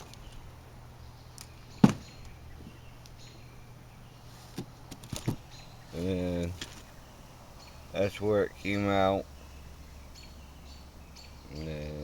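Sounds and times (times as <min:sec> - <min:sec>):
loud thump: 0:01.8 - 0:02.1.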